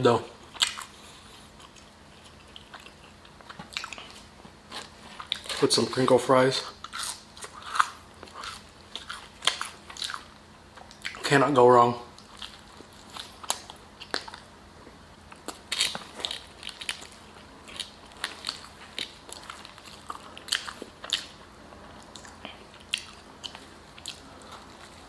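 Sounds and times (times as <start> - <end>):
close chewing with wet mouth clicks: 0.5 - 6.0, 6.7 - 11.2, 12.1 - 14.5, 15.3 - 21.4, 22.0 - 25.0.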